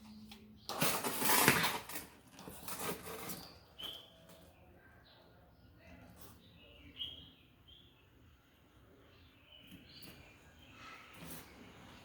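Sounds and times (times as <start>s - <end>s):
faint bird chirps: 3.1s - 12.0s.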